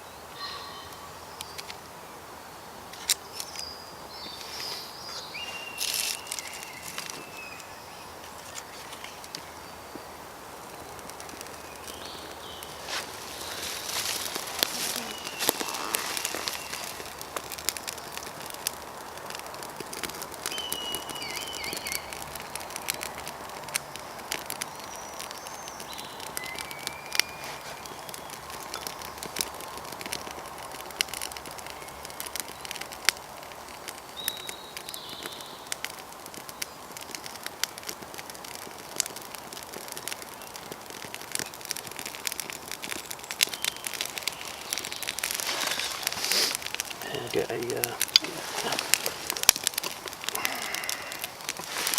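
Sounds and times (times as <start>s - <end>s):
campfire crackling and popping: 0.0s - 51.9s
bird chirps: 0.3s - 1.8s, 3.0s - 10.1s, 11.5s - 17.0s, 20.5s - 22.1s, 24.6s - 29.2s.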